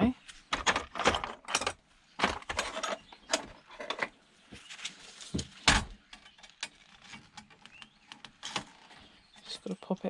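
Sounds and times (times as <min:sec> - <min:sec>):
plastic and metal parts rattling: 0:00.5 - 0:04.2.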